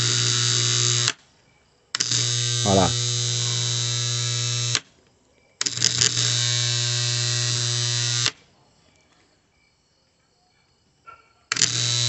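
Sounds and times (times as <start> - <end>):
electrical contactor buzzing: 0.0 - 1.2, 2.0 - 4.8, 5.6 - 8.4, 11.5 - 12.0.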